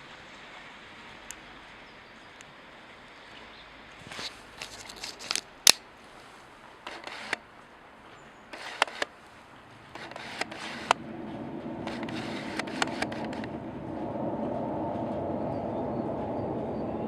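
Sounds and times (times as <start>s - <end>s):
sharp clicks and crackles: 4.1s - 5.8s, 6.8s - 7.4s, 8.5s - 9.1s, 9.9s - 13.6s
faint low drone: 10.6s - 17.0s.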